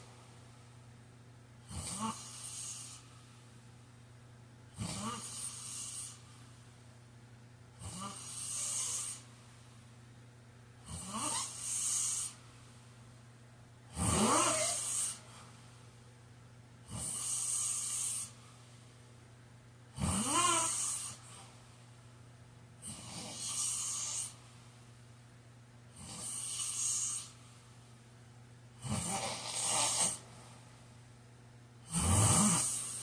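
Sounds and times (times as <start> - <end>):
man snoring with rattling tone: 1.6 - 3.0, 4.8 - 6.2, 7.8 - 9.2, 10.8 - 12.4, 13.9 - 15.2, 16.9 - 18.4, 19.9 - 21.3, 22.8 - 24.4, 26.0 - 27.4, 28.8 - 30.2, 31.8 - 33.0.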